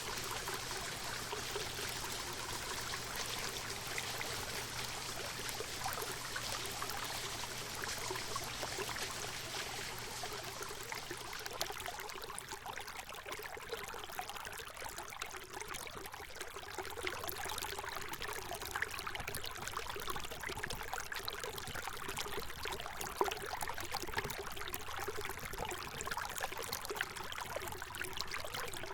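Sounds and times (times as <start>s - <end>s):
stream flowing: 0.0s - 15.1s.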